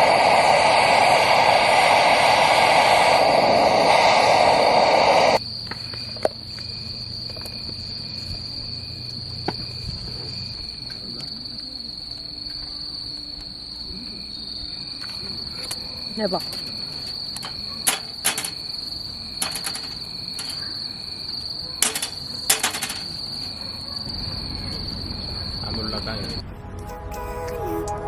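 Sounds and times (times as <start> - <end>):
loud even hiss: 0.0 - 5.4, 15.1 - 23.6
crickets chirping: 0.0 - 26.5.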